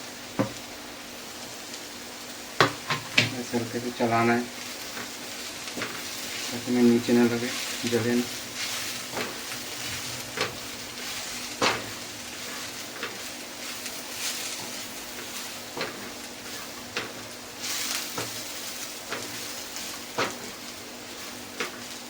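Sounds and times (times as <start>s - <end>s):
food sizzling in oil: 0.0s - 22.0s
utensil clicking against pan: 4.9s - 10.7s, 16.9s - 17.2s, 19.0s - 20.6s, 21.6s - 21.8s.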